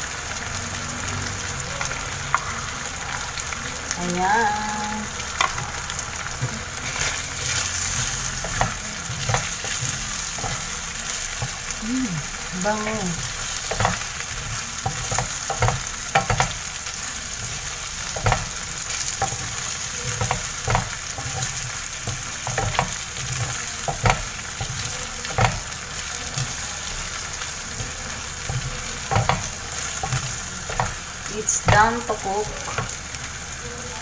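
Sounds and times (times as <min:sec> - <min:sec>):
food sizzling in a frying pan: 0:00.0 - 0:34.0
utensil scraping and knocking pan: 0:06.8 - 0:10.7.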